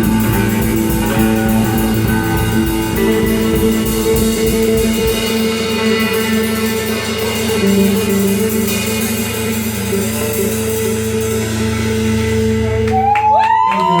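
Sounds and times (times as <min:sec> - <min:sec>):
crowd whooping and shouting: 0:00.0 - 0:03.8, 0:12.6 - 0:14.0
band holding final chord: 0:00.0 - 0:12.9.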